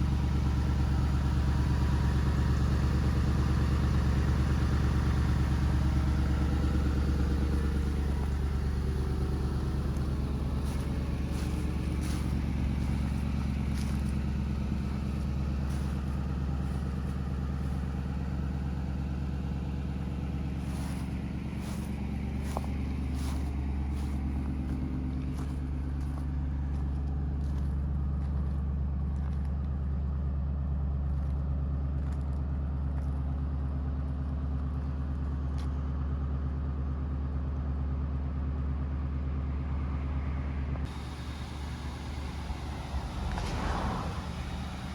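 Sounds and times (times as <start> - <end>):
car engine idling: 0.0 - 44.9.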